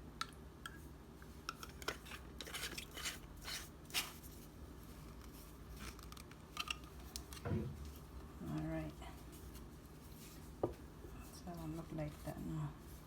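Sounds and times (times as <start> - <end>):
heavy thump: 7.4 - 7.9.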